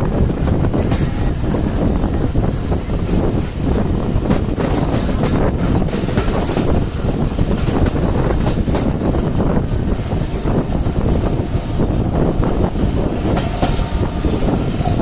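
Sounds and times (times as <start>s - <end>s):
train wheels rumbling on rail: 0.0s - 15.0s
clicks of rail joints: 4.2s - 6.8s.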